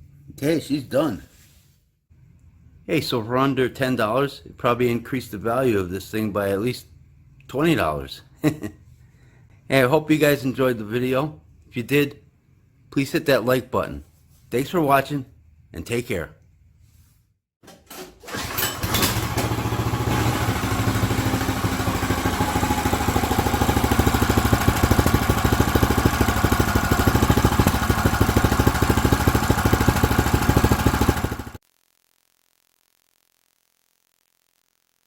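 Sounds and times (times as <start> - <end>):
small gas engine starting: 18.1 - 31.6.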